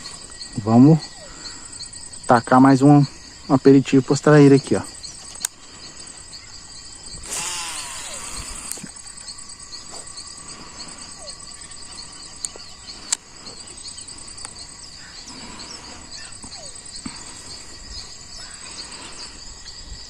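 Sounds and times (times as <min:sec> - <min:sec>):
insects chirping: 0:00.0 - 0:20.0
sharp clicks: 0:05.2 - 0:05.6, 0:07.2 - 0:09.3, 0:12.4 - 0:13.3.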